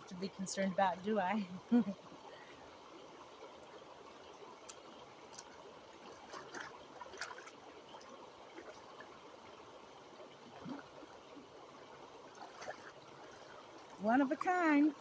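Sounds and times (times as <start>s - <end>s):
creek water trickling: 0.0s - 15.0s
sharp water splashes: 4.7s - 9.1s, 12.3s - 14.1s.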